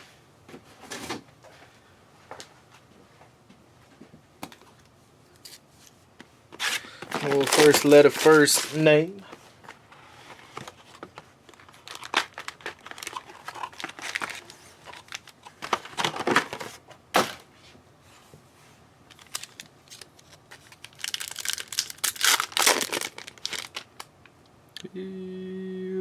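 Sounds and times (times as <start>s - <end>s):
wrappers torn and crinkled: 6.6s - 8.8s, 11.5s - 16.2s, 19.1s - 24.1s.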